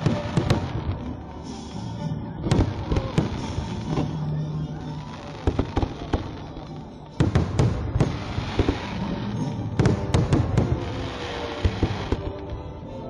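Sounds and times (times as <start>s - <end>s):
fireworks bangs: 0.0s - 1.5s, 2.4s - 4.2s, 7.1s - 12.4s
fireworks crackling: 0.0s - 12.8s.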